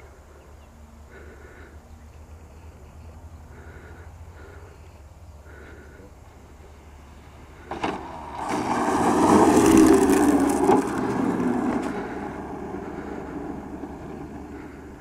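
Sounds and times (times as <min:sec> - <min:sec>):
electric ducted fan rushing: 0:06.8 - 0:15.0.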